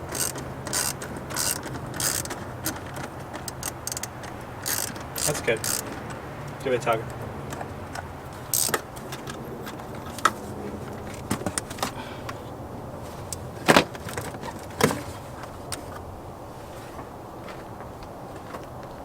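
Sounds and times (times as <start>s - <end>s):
plastic parts clicking and knocking: 0.0s - 12.4s, 13.2s - 15.8s.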